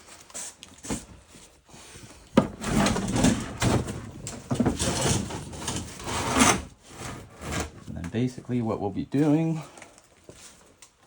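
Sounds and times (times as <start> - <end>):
scraping and rattling of tools: 2.4 - 7.9.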